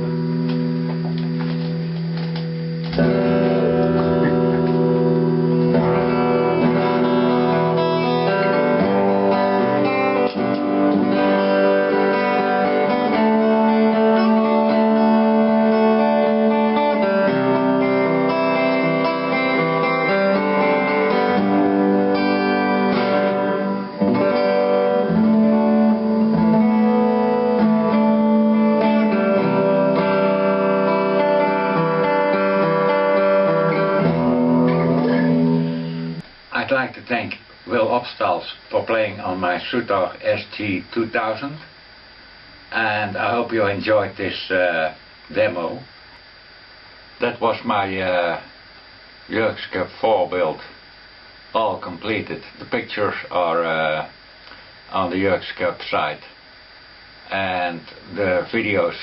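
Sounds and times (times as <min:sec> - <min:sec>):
electric guitar strumming chords: 0:00.0 - 0:36.5.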